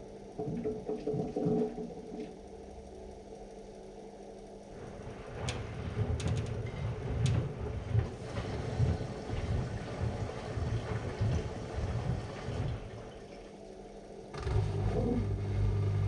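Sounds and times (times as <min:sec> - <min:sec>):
washing machine rumbling: 0:00.0 - 0:16.0
washing machine clicks: 0:05.3 - 0:08.6.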